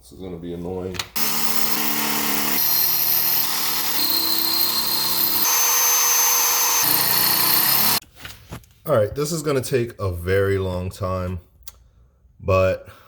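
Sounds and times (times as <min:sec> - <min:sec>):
power drill drilling into steel: 0:01.2 - 0:08.0.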